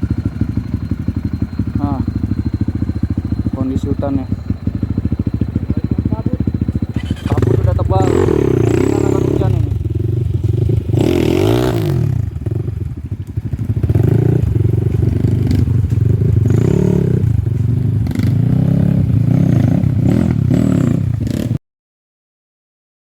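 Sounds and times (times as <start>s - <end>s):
dirt bike engine revving: 0.0s - 21.6s.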